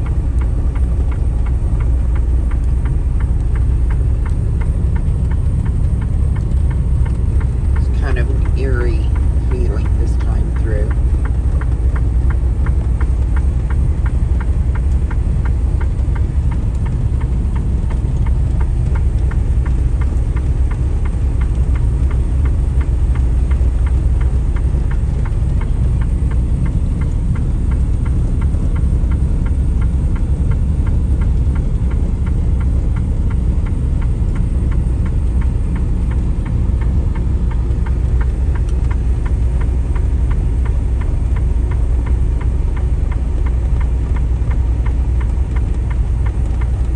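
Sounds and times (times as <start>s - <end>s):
diesel truck engine rumble: 0.0s - 46.9s
road noise: 0.0s - 46.9s.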